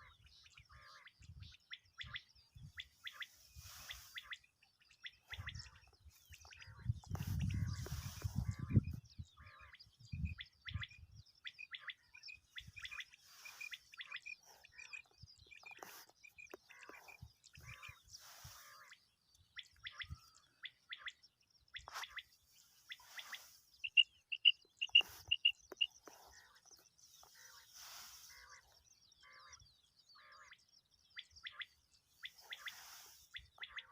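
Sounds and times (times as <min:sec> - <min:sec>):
quail calling: 0:22.9 - 0:26.0.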